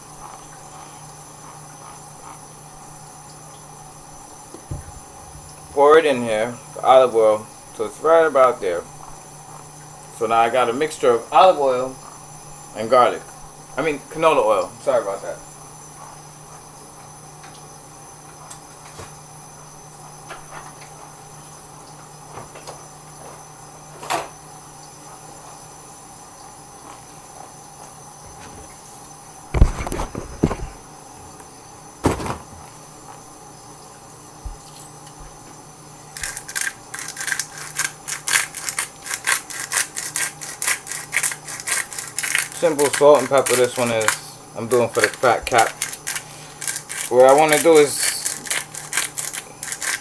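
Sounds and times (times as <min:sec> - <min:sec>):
knocks of objects set down: 0:29.5 - 0:30.8, 0:32.0 - 0:32.6
seasoning shaker rattling: 0:36.1 - 0:50.0.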